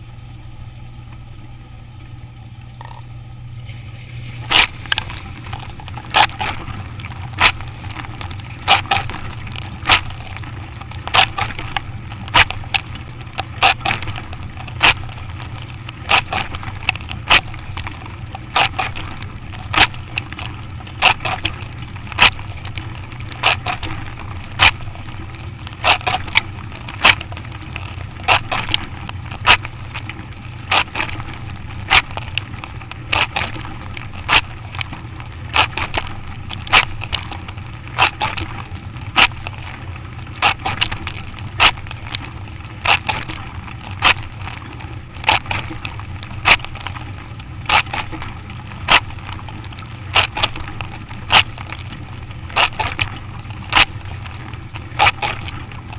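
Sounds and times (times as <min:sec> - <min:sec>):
machine humming: 0:00.0 - 0:55.9.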